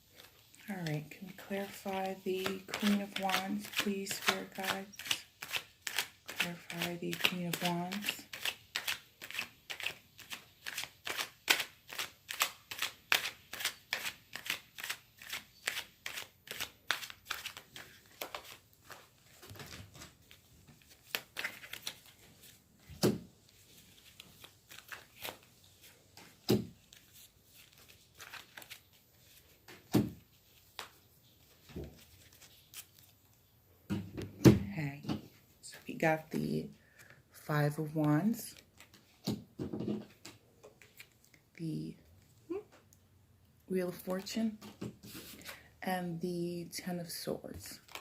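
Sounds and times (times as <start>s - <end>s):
cards being shuffled: 0.1s - 33.3s, 38.4s - 39.4s, 40.1s - 41.4s, 47.8s - 48.0s.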